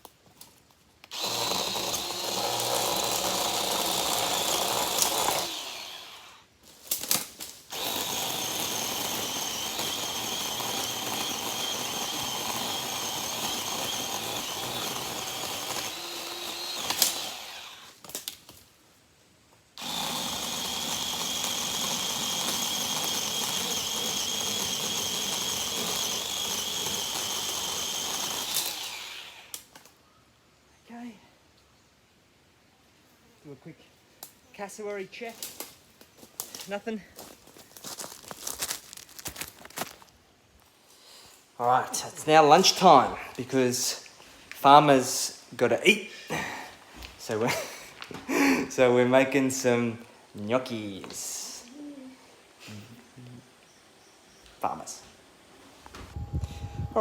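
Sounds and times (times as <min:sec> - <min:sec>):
power cutting tool running: 0:01.1 - 0:06.4, 0:07.7 - 0:17.9, 0:19.8 - 0:29.6.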